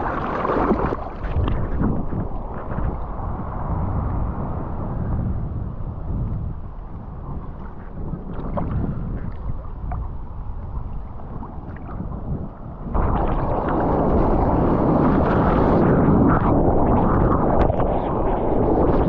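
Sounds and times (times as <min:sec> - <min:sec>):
rush of white water: 0:00.0 - 0:03.2, 0:13.0 - 0:19.0
sea water sloshing and splashing: 0:00.0 - 0:03.6, 0:07.2 - 0:19.0
low rumble: 0:00.0 - 0:19.0.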